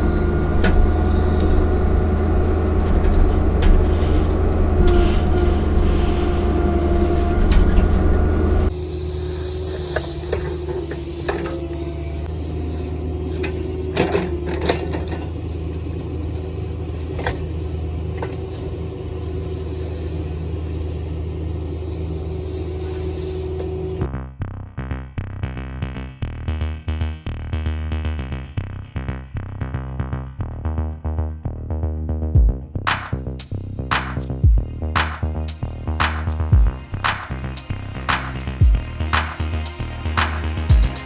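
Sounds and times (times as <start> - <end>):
construction equipment engine running: 0.0 - 24.1, 32.4 - 41.0
electronic music with drum-machine beat: 32.4 - 41.0.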